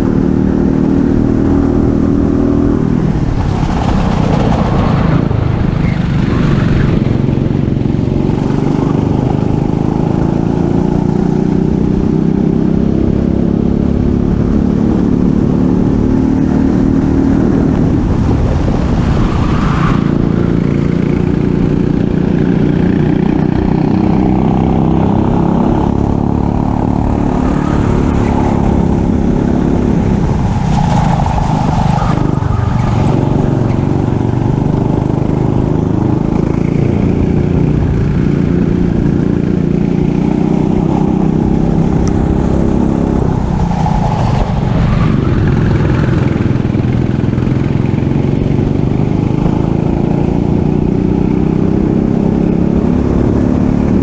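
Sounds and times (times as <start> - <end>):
racing kart engine revving: 20.0 - 54.0.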